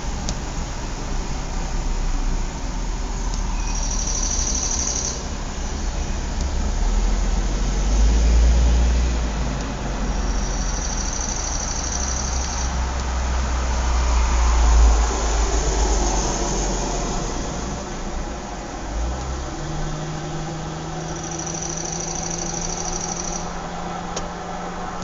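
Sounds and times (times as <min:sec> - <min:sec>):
traffic rumble: 0:00.0 - 0:25.0
high trilling buzz: 0:21.0 - 0:23.6.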